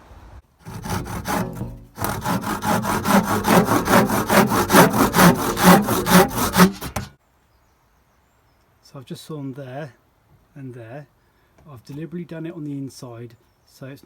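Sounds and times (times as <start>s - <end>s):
hand saw cutting wood: 0.6s - 7.2s.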